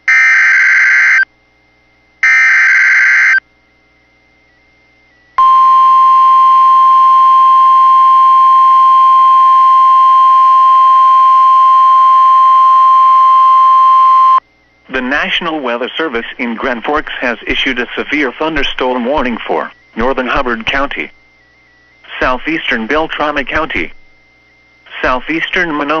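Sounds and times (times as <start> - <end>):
steady warning alarm tone: 0.0 - 1.3, 2.2 - 3.5, 4.2 - 15.8.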